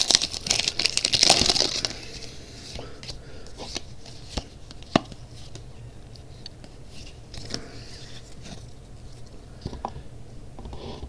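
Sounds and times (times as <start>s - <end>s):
foil wrapper and cards rustling: 0.0s - 4.5s.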